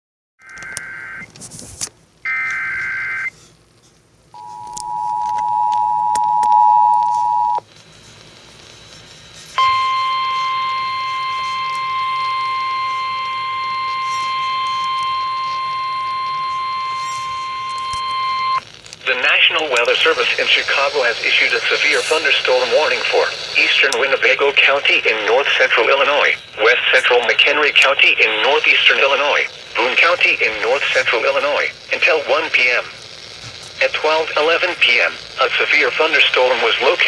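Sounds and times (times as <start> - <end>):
two-tone attention signal: 4.4 - 7.6, 9.6 - 18.6
buzzy data bursts: 7.1 - 37.0.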